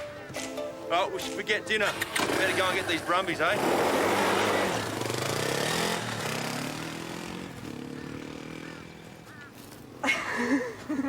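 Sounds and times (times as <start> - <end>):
vehicle engine revving and accelerating: 1.9 - 9.2.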